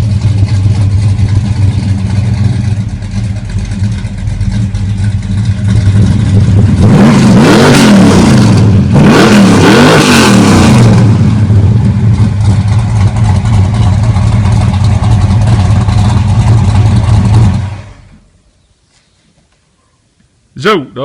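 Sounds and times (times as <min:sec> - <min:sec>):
car engine idling and revving: 0:00.0 - 0:18.4.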